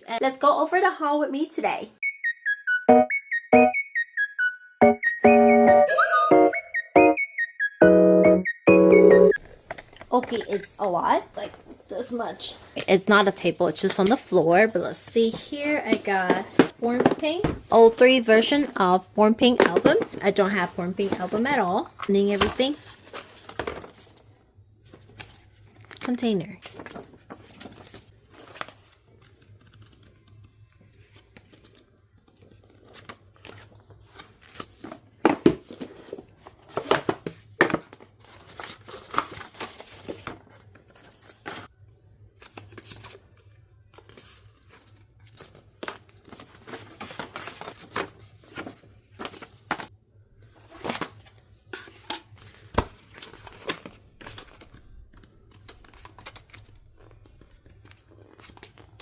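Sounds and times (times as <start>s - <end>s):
plastic and paper crinkling: 19.5s - 49.9s, 50.5s - 59.0s.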